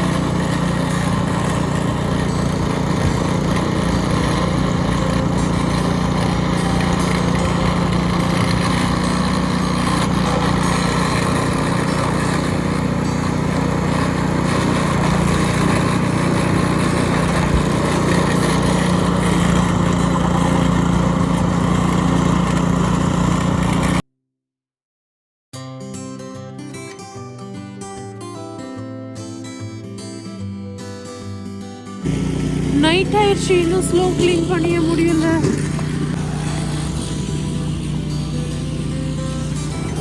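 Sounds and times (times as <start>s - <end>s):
small petrol engine running: 0.0s - 24.0s, 32.0s - 40.0s.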